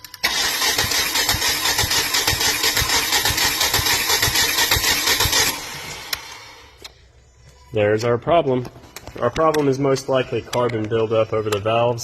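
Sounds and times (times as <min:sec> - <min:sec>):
car engine cranking by starter: 0:00.1 - 0:06.7.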